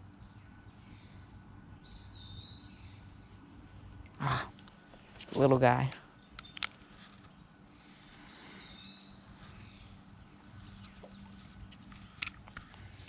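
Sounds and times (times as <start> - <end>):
creek ambience: 0.0 - 13.0.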